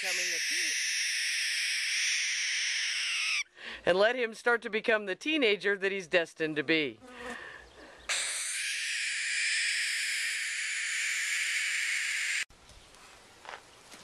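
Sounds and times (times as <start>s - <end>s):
owl hissing: 0.0s - 3.5s, 8.1s - 12.5s.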